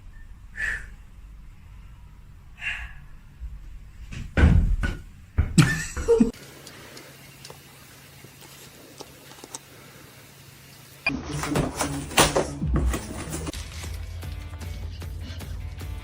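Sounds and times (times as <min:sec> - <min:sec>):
loud thuds and bangs: 0:04.1 - 0:05.7.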